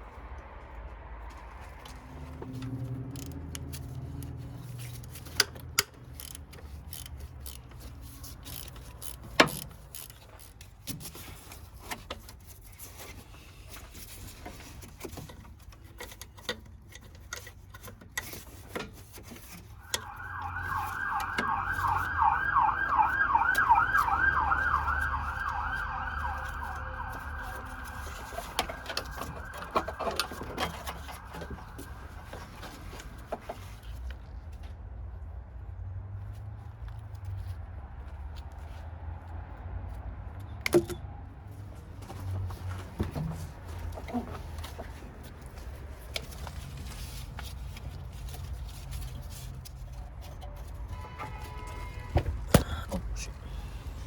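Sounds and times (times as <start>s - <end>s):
emergency siren yelping: 19.8s - 32.5s.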